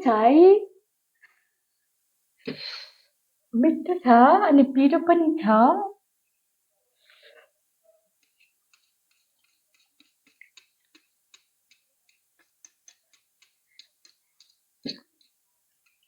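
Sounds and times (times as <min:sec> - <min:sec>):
chewing noodles: 0:08.2 - 0:16.0.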